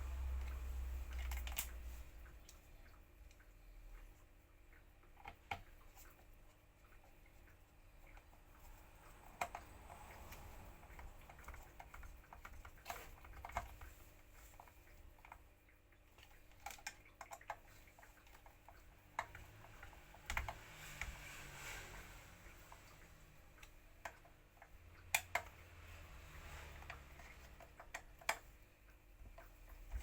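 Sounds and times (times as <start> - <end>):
light clicks and taps: 22.5 - 30.0.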